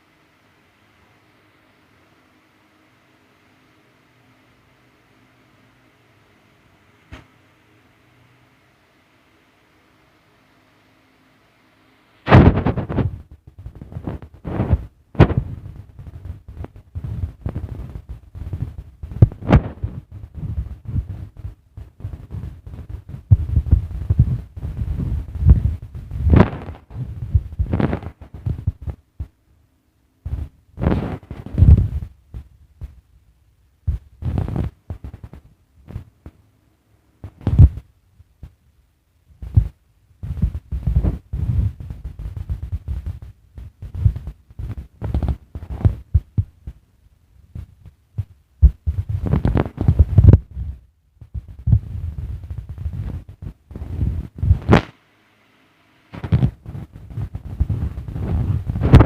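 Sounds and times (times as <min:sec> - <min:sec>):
low thumps and sharp knocks: 0:12.3 - 0:29.3, 0:39.4 - 0:46.8, 0:47.6 - 0:54.9.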